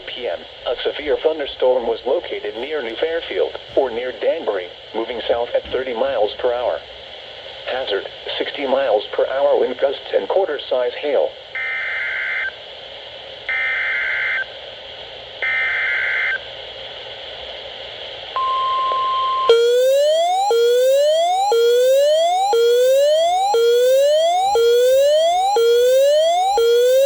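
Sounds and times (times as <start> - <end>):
steady single-pitch attention tone: 18.4 - 27.0
siren whoop rising in pitch: 19.5 - 27.0.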